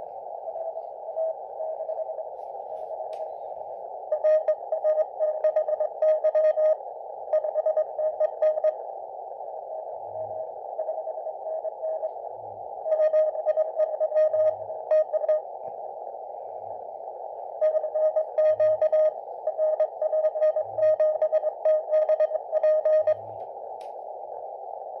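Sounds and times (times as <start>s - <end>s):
radio static hiss: 0.0s - 25.0s
morse code tone: 17.6s - 23.2s.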